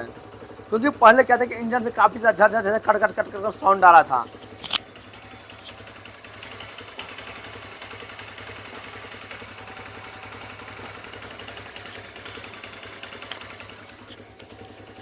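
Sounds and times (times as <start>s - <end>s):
motorcycle engine idling: 0.0s - 15.0s.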